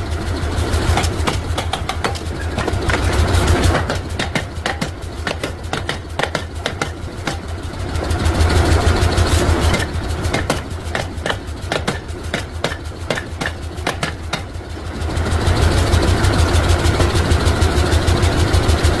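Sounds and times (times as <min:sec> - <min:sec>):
workshop machine humming: 0:00.0 - 0:18.2
sharp strikes on metal: 0:01.0 - 0:03.0, 0:03.8 - 0:07.5, 0:09.7 - 0:14.5.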